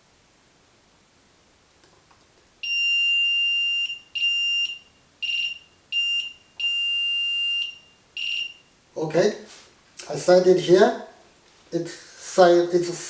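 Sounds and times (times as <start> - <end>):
signal detector beeping: 2.6 - 8.8.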